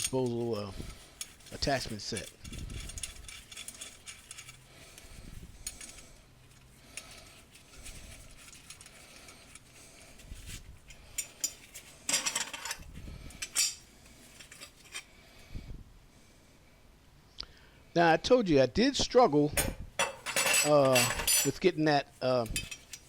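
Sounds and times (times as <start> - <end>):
metal hardware clinking and rattling: 0.0 - 15.1, 19.6 - 21.6, 22.3 - 23.0.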